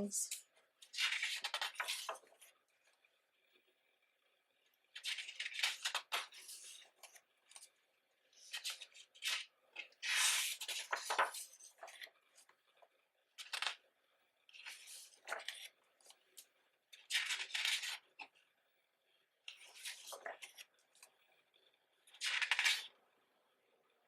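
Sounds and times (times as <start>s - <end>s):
pages turning and rustling: 0.8s - 2.5s, 5.0s - 7.7s, 8.4s - 12.6s, 13.4s - 13.8s, 14.5s - 18.3s, 19.5s - 21.2s, 22.1s - 23.0s.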